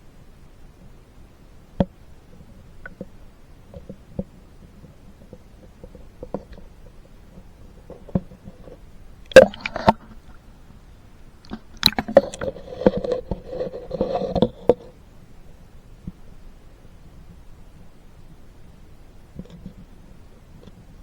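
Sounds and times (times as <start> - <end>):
faint underwater clicks: 4.9 - 10.5, 11.4 - 14.8
sharp knock underwater: 9.3 - 10.1, 11.8 - 12.5
knocking and water sloshing: 9.3 - 10.4, 11.5 - 12.6.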